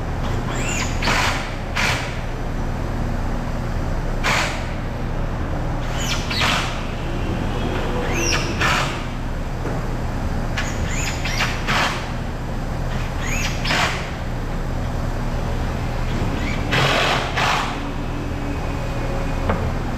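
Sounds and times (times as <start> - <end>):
workshop machinery hum: 0.0 - 19.9
high squeaks sliding down: 7.6 - 9.1.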